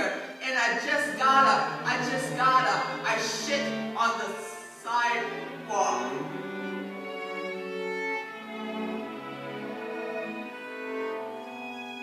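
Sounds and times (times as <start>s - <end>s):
string quartet bowed chords: 0.0s - 12.0s.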